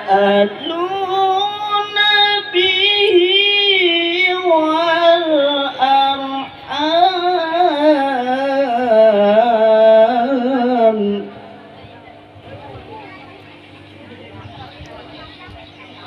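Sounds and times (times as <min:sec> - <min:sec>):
person chanting melodically: 0:00.0 - 0:11.6.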